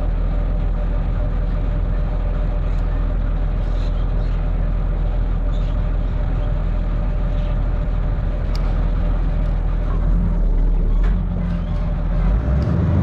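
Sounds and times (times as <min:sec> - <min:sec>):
excavator diesel engine running: 0:00.0 - 0:13.0.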